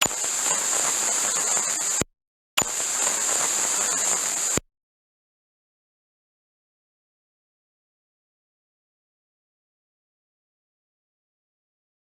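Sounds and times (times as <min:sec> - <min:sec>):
high-pitched hiss: 0:00.0 - 0:02.0, 0:02.6 - 0:04.6
radio interference static: 0:00.0 - 0:02.0, 0:02.6 - 0:04.6
sharp click: 0:00.0 - 0:04.6.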